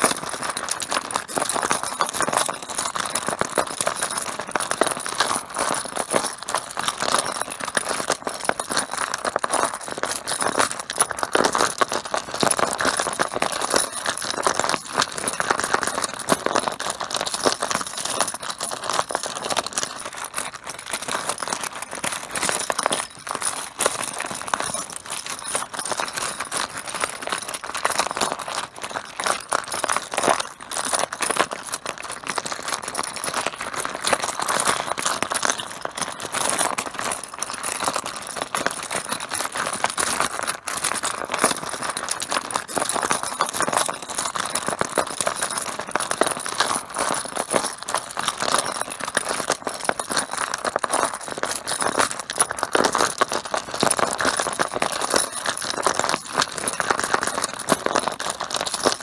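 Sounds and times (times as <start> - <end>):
mahjong tiles clattering: 54.4 - 58.9.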